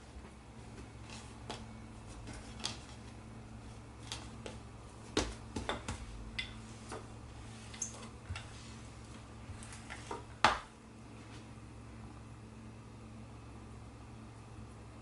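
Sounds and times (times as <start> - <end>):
faint steady hum: 0.0 - 15.0
hands tapping bread dough: 4.0 - 7.1, 9.5 - 10.7.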